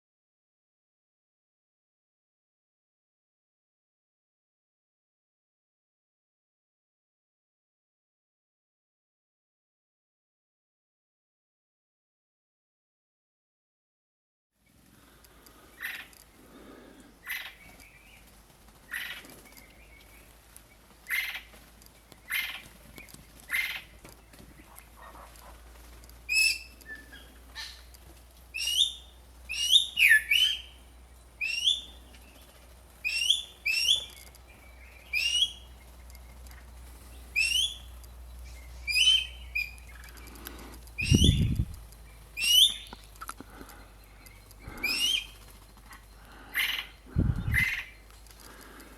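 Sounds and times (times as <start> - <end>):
bird call sweeping up and down: 26.3 - 27.9, 28.5 - 30.8, 31.4 - 36.6, 37.2 - 48.9.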